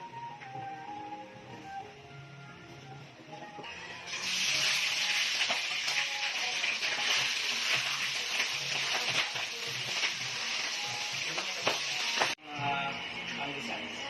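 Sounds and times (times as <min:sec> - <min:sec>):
food sizzling in hot oil: 0:04.0 - 0:12.4.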